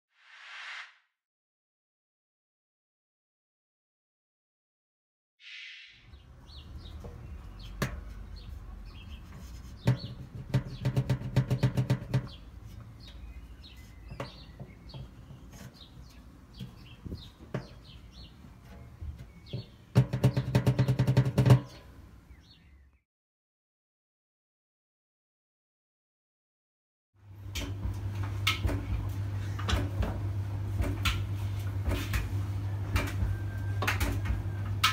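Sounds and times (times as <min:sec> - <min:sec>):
drum clattering loudly: 0:09.9 - 0:12.4, 0:20.0 - 0:21.8
washing machine drum rumbling: 0:09.9 - 0:12.4, 0:18.8 - 0:21.8, 0:27.4 - 0:34.9.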